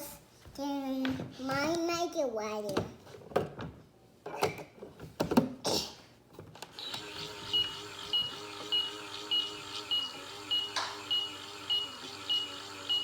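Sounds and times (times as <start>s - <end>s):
toy microwave electronic hum: 6.6s - 13.0s
short high beeps: 7.5s - 13.0s.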